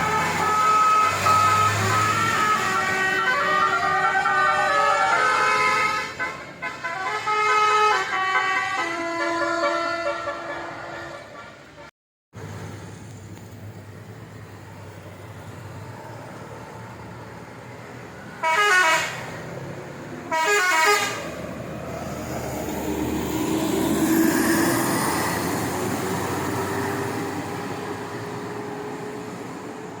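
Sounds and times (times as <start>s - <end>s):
bus horn melodic blasts: 0.0s - 11.5s, 18.4s - 19.4s, 20.2s - 21.4s
passing vehicle: 0.0s - 30.0s
traffic rumble: 0.0s - 30.0s.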